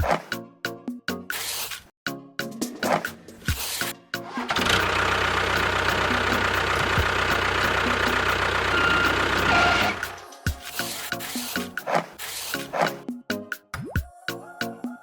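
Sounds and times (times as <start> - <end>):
motor running: 4.5 - 10.2.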